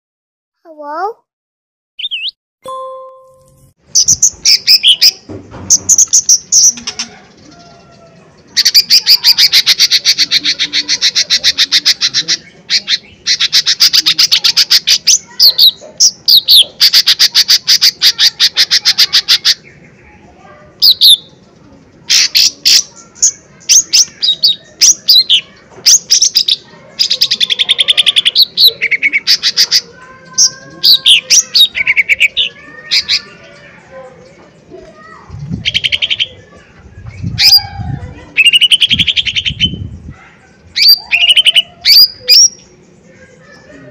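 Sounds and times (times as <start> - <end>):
bird singing rapid trills: 2.0 - 2.3, 35.0 - 43.9
bird whistled phrases: 2.0 - 2.3, 4.0 - 5.2, 8.6 - 19.6, 20.8 - 21.4, 22.1 - 33.5, 35.0 - 43.6.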